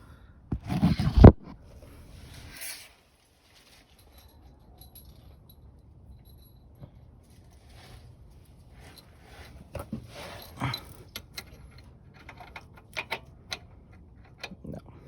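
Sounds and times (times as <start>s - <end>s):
metal tools clicking and rattling: 9.8s - 14.9s.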